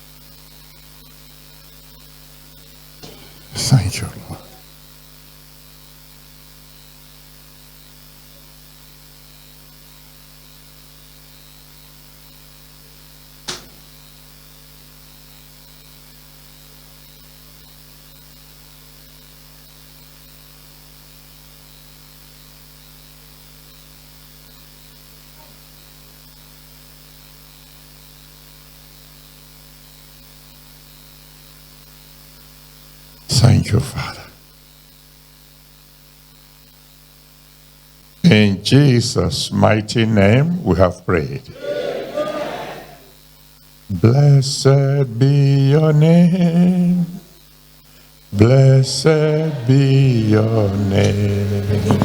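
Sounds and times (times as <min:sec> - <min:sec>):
electrical mains hum: 0:00.0 - 0:04.7, 0:12.1 - 0:18.3, 0:33.2 - 0:34.6, 0:38.2 - 0:43.2, 0:43.9 - 0:52.0.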